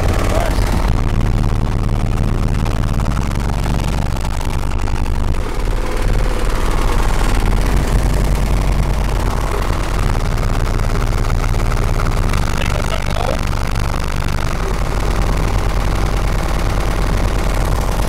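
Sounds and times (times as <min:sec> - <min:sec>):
deep bass from subwoofers: 0:00.0 - 0:18.0.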